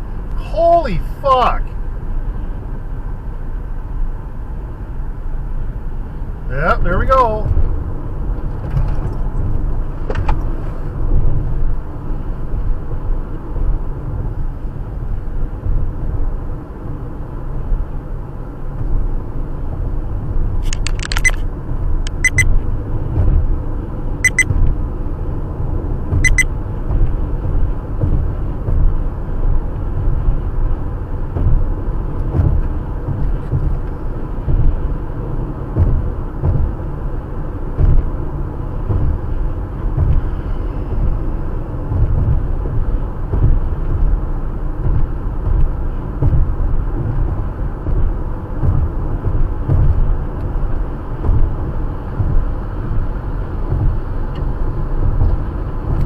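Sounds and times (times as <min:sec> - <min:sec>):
car road and engine rumble: 0:00.0 - 0:56.0
short high beeps: 0:22.1 - 0:22.5, 0:24.2 - 0:24.5, 0:26.2 - 0:26.5.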